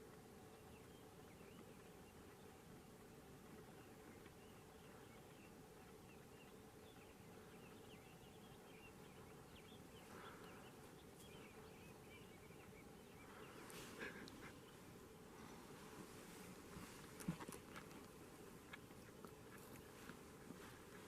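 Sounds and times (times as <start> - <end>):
soft rustle: 12.6 - 21.0.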